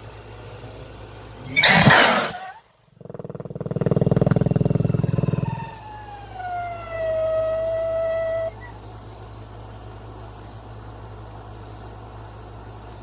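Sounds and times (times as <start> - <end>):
rocket whistle gliding down: 5.4 - 8.7.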